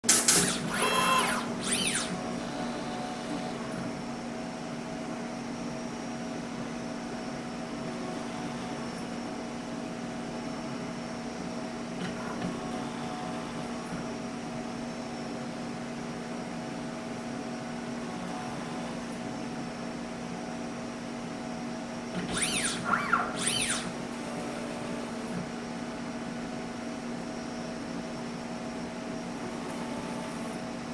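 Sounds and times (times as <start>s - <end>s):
steady machine hum: 0.0s - 10.6s, 22.2s - 30.9s
robot motors whining: 0.1s - 3.8s, 22.2s - 24.1s.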